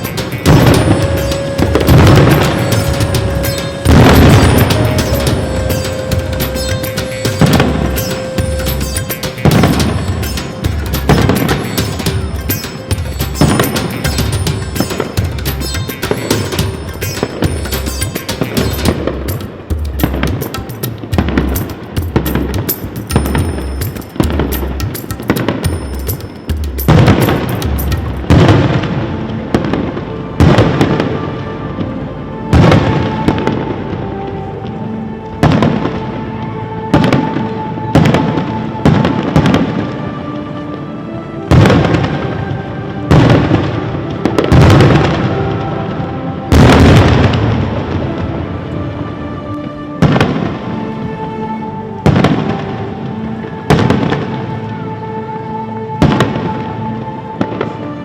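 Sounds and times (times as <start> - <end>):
fireworks booms: 0.0 - 6.0
background music: 0.0 - 58.0.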